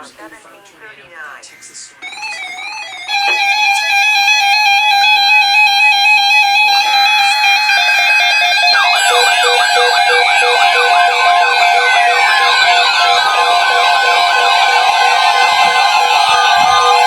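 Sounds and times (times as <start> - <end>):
overlapping electronic alarm tones: 2.0 - 17.0
pulsing beep: 2.0 - 17.0
rising electronic sweep: 6.6 - 17.0.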